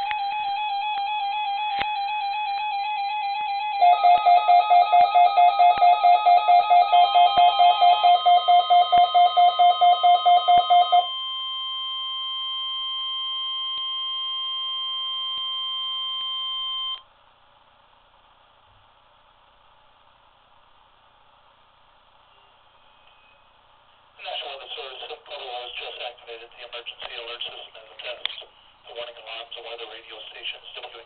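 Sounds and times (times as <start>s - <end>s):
steady warning alarm tone: 0.0s - 17.0s.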